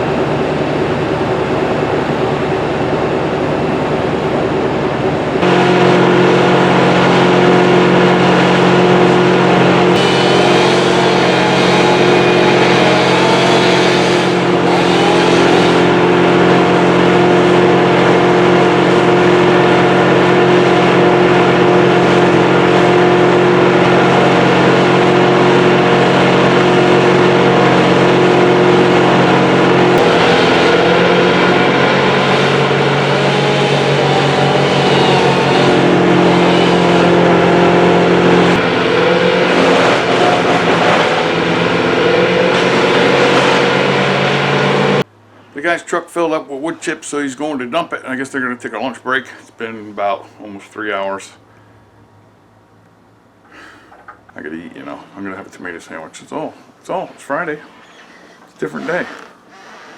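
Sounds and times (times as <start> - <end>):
large engine running loudly: 0.0 - 45.1.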